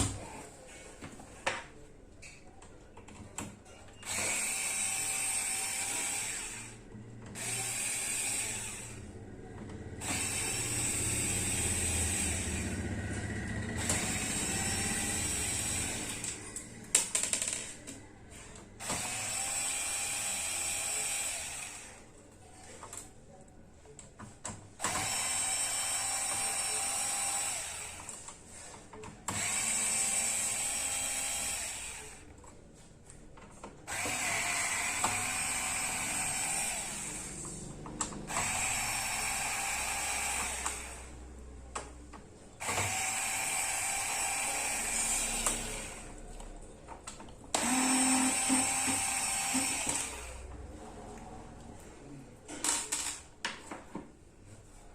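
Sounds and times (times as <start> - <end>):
power drill whining: 4.0 - 9.1, 9.9 - 17.8, 18.8 - 22.0, 24.8 - 28.2, 29.3 - 32.3, 33.9 - 41.2, 42.6 - 46.2, 47.5 - 50.5.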